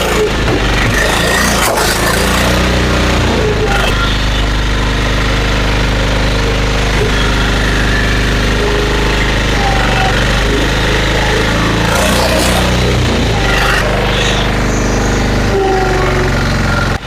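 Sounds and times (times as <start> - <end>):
engine running steadily: 0.0 - 17.0.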